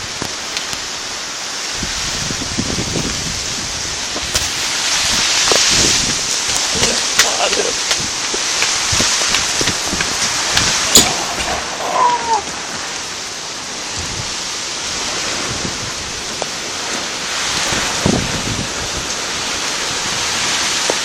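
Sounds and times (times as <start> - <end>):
hailstones ticking: 0.0 - 21.0
strong wind rushing: 1.7 - 20.7
loud crack: 6.4 - 12.9.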